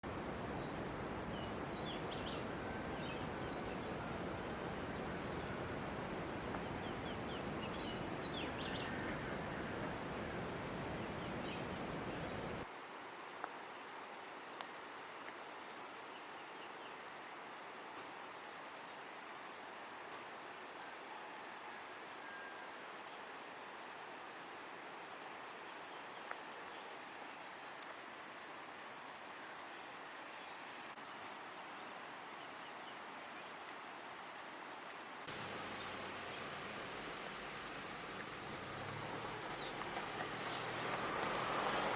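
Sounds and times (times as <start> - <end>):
birds chirping: 0.0 - 12.6, 35.3 - 41.9
rushing falling water: 0.0 - 12.7, 35.3 - 41.9.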